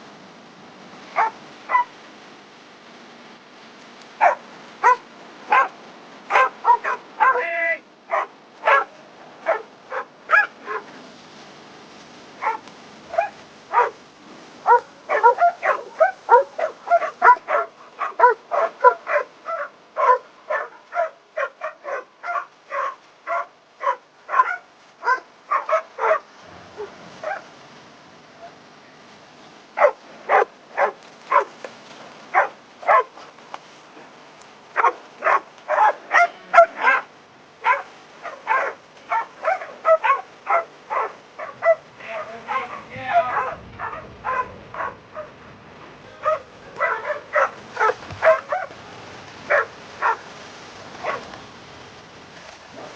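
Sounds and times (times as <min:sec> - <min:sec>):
dog barking and yipping: 0:01.2 - 0:02.0, 0:04.2 - 0:07.4, 0:08.1 - 0:10.9, 0:12.4 - 0:14.0, 0:14.6 - 0:27.5, 0:29.8 - 0:31.6, 0:32.3 - 0:33.2, 0:34.8 - 0:45.4, 0:46.2 - 0:48.7, 0:49.5 - 0:50.2, 0:51.0 - 0:51.3.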